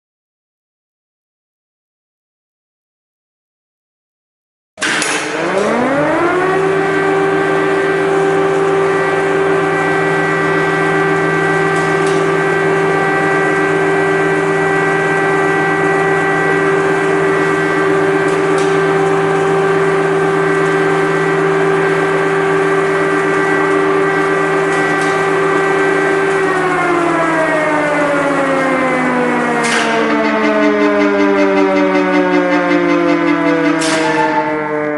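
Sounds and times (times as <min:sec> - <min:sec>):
air-raid siren wailing: 0:04.8 - 0:34.9
low hum: 0:28.1 - 0:34.9.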